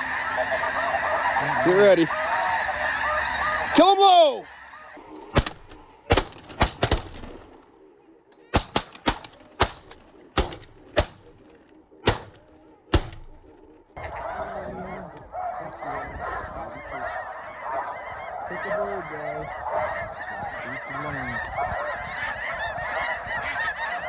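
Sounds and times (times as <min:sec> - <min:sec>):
geese honking: 0:00.0 - 0:06.2, 0:06.9 - 0:24.0
shotgun blasts: 0:05.3 - 0:07.6, 0:08.5 - 0:11.4, 0:12.0 - 0:13.4.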